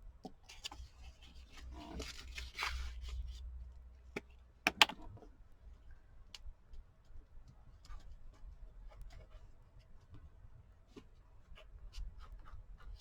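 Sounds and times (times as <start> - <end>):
paper rustling: 0.5 - 3.4.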